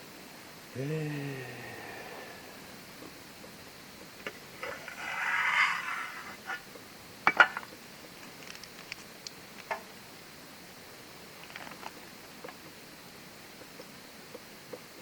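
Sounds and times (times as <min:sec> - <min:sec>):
cookware scraping: 0:04.6 - 0:06.7.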